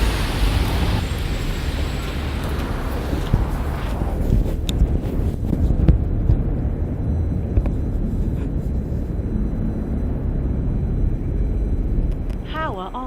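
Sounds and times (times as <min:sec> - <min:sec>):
low rumble of passing vehicles: 0:00.0 - 0:13.0.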